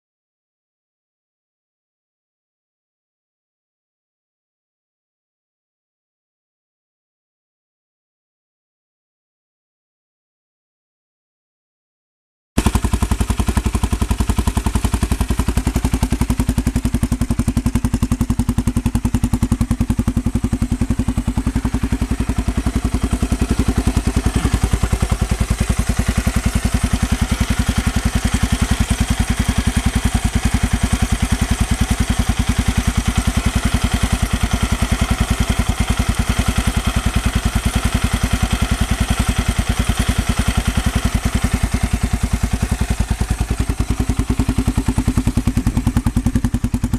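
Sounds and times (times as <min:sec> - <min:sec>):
motorcycle engine idling: 0:12.6 - 0:46.9.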